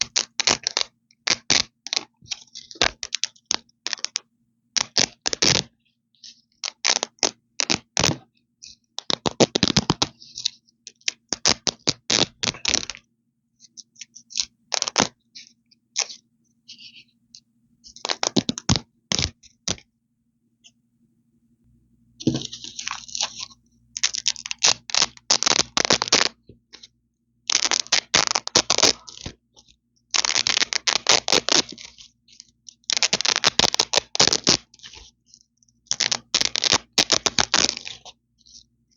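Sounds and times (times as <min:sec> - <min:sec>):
velcro ripping: 0:22.3 - 0:26.4, 0:27.5 - 0:29.4, 0:30.1 - 0:32.1, 0:32.9 - 0:35.0, 0:35.9 - 0:38.6.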